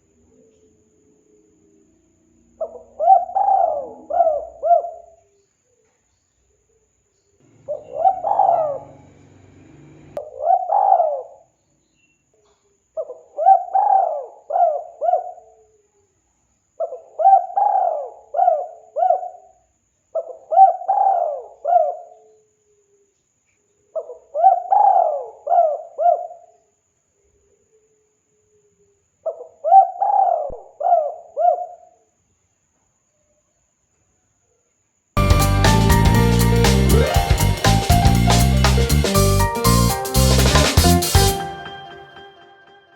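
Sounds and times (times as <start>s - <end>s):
dove cooing: 2.6s - 5.2s, 7.6s - 9.1s, 10.2s - 11.4s, 13.0s - 15.4s, 16.8s - 19.3s, 20.2s - 22.0s, 24.0s - 26.3s, 29.3s - 31.9s.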